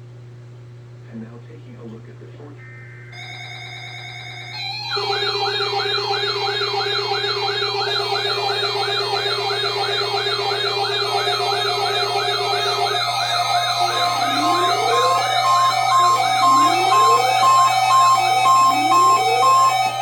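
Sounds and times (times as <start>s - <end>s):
fast yelping electronic siren: 3.1s - 20.0s
pulsing beep: 3.1s - 20.0s
rising siren wail: 3.2s - 20.0s.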